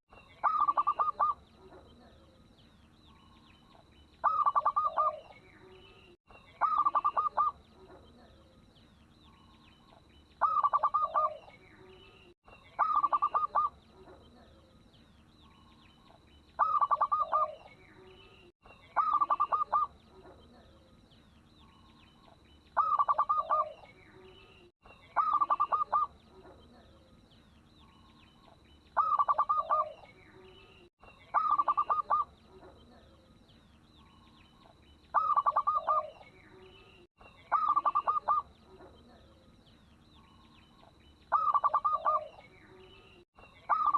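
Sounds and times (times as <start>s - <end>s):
dove cooing: 0.4s - 2.3s, 4.2s - 5.4s, 6.6s - 8.5s, 10.4s - 11.6s, 12.8s - 14.6s, 16.6s - 17.8s, 19.0s - 20.8s, 22.8s - 24.3s, 25.2s - 27.0s, 29.0s - 30.1s, 31.3s - 33.1s, 35.1s - 36.3s, 37.5s - 39.4s, 41.3s - 42.5s, 43.7s - 43.9s.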